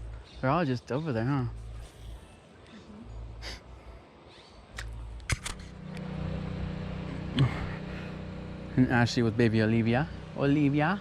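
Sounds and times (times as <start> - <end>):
sharp clicks: 4.7 - 6.1
vehicle engine hum: 4.7 - 11.0.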